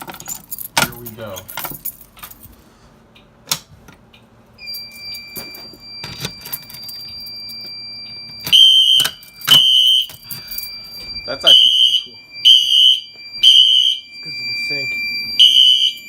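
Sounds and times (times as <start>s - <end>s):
fire alarm horn blasts: 4.6s - 16.0s
steady high electronic beep: 10.7s - 16.0s.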